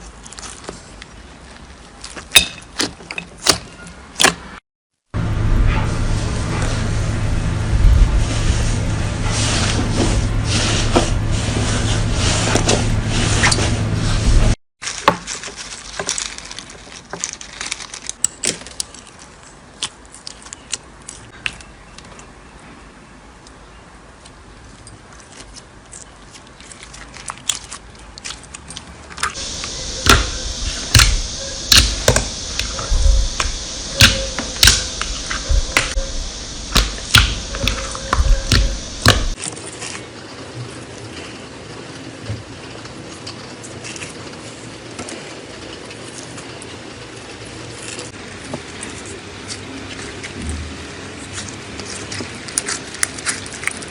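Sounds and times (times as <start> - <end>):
slime crackling and popping: 30.9 - 39.4.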